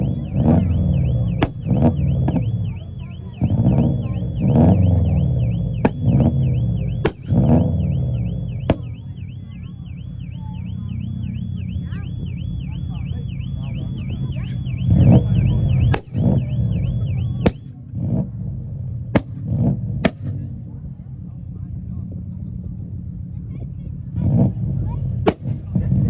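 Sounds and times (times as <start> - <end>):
warbling alarm-like tone: 0.0 - 17.7
car engine idling: 0.0 - 26.0
car engine revving: 0.0 - 26.0.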